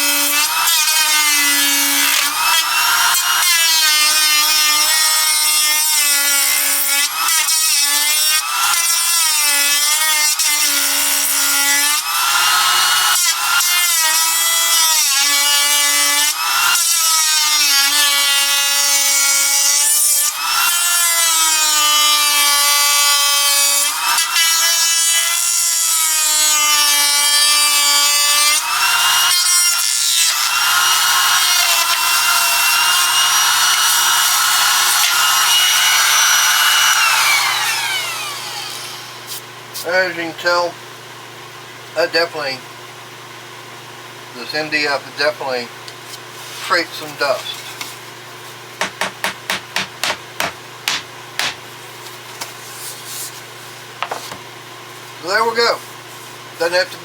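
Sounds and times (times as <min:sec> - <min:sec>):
router whining through board: 0:00.0 - 0:39.4, 0:48.8 - 0:51.6.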